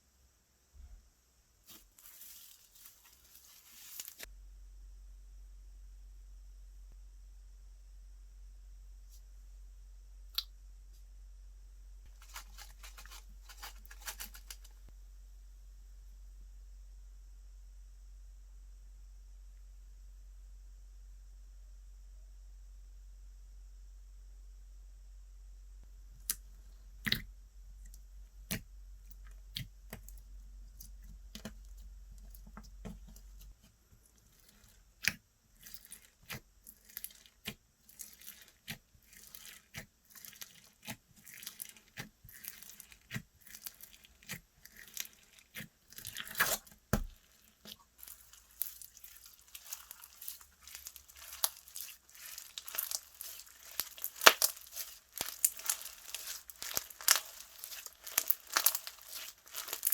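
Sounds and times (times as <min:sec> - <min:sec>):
slime clicking and popping: 0:48.0 - 0:59.9.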